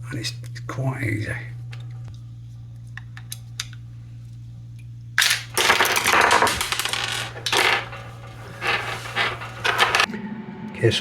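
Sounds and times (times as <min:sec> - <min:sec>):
steady low hum: 0:00.0 - 0:11.0
plastic parts scraping and clattering: 0:05.2 - 0:10.1.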